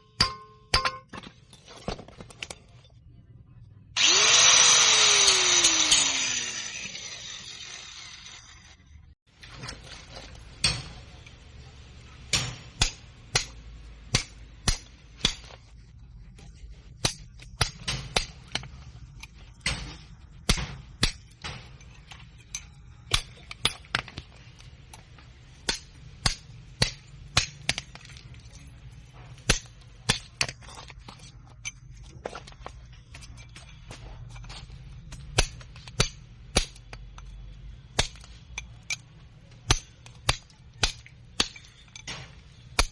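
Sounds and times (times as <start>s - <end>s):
hammer striking steel casing: 0.0s - 1.3s
faint low hum: 1.2s - 4.3s.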